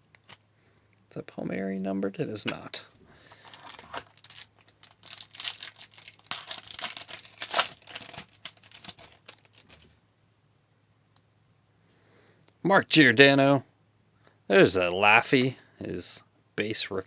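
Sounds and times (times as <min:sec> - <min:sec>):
foil wrapper tearing and crinkling: 0:03.4 - 0:09.9.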